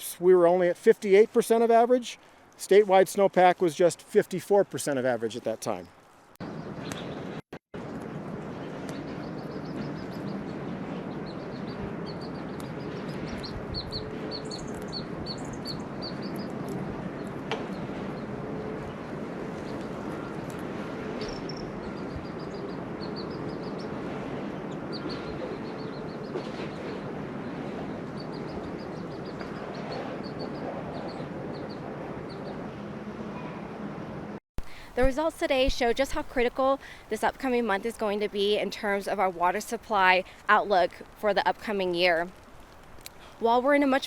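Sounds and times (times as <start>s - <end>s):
outdoor background hiss: 0.0s - 6.7s, 34.6s - 44.0s
small birds chirping: 11.2s - 17.3s, 21.2s - 24.0s, 28.2s - 32.5s.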